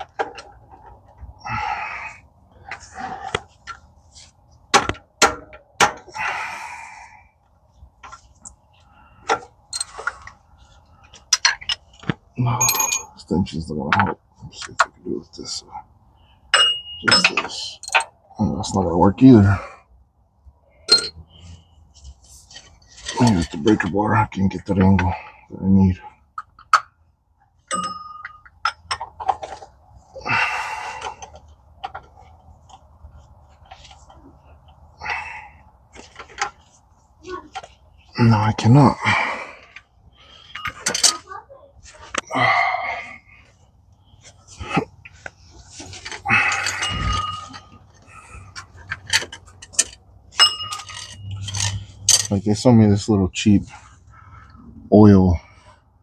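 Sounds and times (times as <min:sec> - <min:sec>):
metal hand tools clinking: 0:12.6 - 0:13.2, 0:20.9 - 0:21.2, 0:27.7 - 0:29.0, 0:46.4 - 0:47.8, 0:48.5 - 0:52.4.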